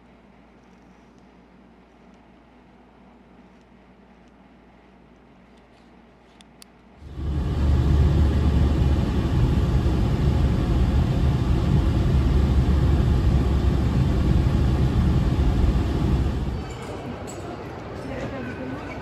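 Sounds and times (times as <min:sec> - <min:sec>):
loud steady rumbling: 0:07.0 - 0:17.1.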